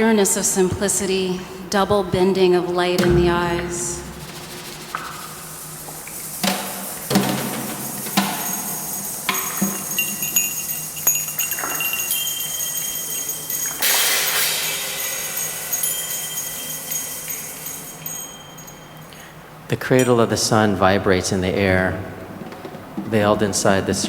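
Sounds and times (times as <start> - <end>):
sharp percussion hits: 3.0 - 5.3
chimes and bells ringing: 9.6 - 19.2.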